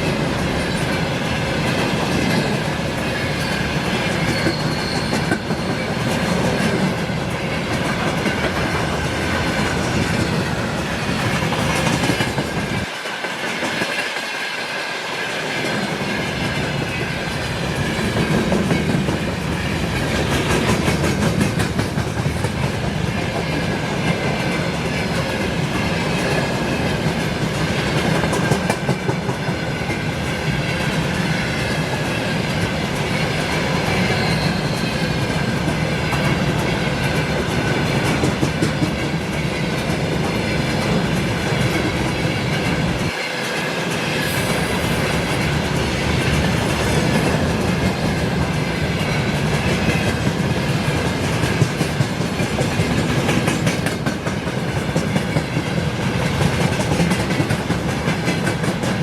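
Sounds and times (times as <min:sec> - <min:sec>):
high tone from wheel on rail: 0:00.0 - 0:08.5, 0:30.5 - 0:39.7
freight train wagons rolling: 0:00.0 - 0:14.4
wheels clacking over rail joints: 0:16.4 - 0:44.2.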